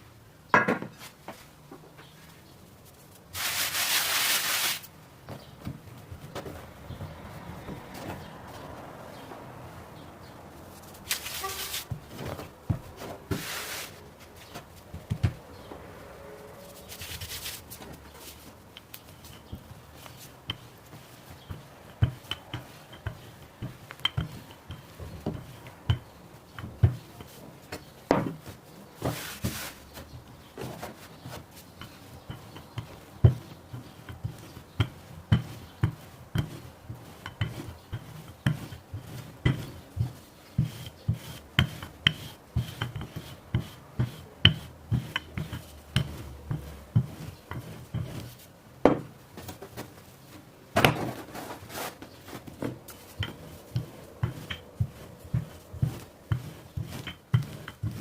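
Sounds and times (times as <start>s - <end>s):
rustle: 0.9s - 5.4s, 6.0s - 58.0s
utensils tapping on work surface: 18.8s - 29.2s, 31.8s - 49.1s, 52.6s - 58.0s.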